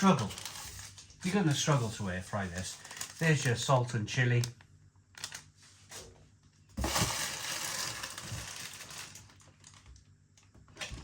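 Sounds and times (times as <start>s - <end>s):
plastic packaging crinkling: 0.0s - 4.5s, 5.1s - 5.6s, 6.8s - 10.1s.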